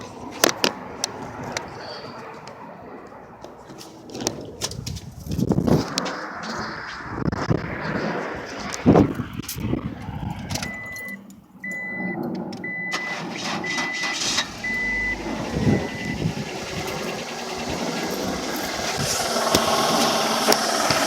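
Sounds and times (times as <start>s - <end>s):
engine running: 5.7s - 21.0s
vehicle warning chime beeping: 10.6s - 19.0s.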